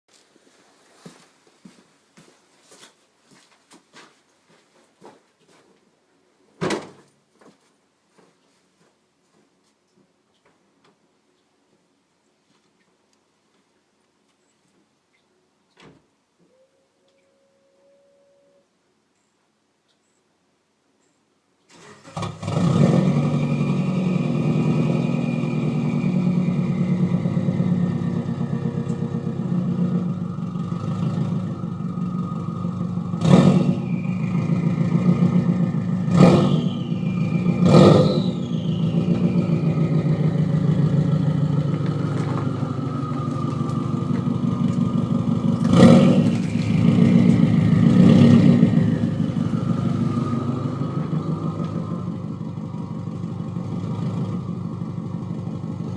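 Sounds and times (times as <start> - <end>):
engine throttle blips: 21.8 - 55.9
car engine idling lumpily: 24.8 - 36.2, 36.8 - 55.9.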